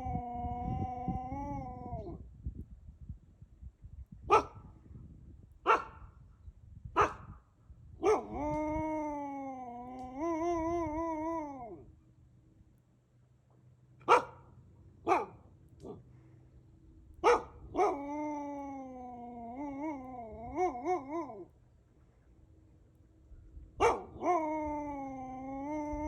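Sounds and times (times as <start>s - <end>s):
wolf howling: 0.0s - 2.2s, 8.0s - 12.0s, 17.3s - 21.6s, 23.8s - 26.0s
wolf barking: 4.3s - 4.6s, 5.7s - 6.1s, 7.0s - 7.3s, 8.0s - 8.4s, 14.0s - 16.1s, 17.2s - 18.0s, 23.8s - 24.4s.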